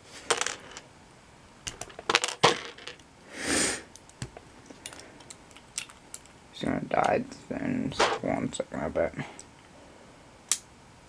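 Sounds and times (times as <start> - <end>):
short hiss: 3.3 - 3.9
plastic bricks clicking together: 4.0 - 6.3.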